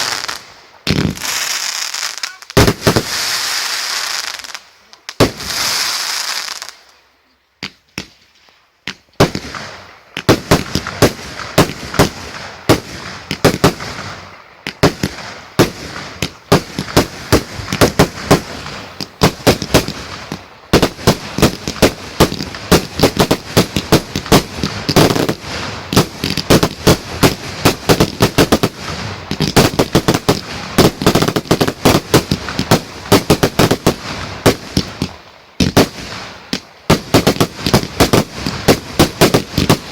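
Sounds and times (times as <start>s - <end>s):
firework hissing rush: 0.0s - 4.6s, 5.2s - 6.7s
fireworks banging and crackling: 0.0s - 7.0s, 7.6s - 39.9s.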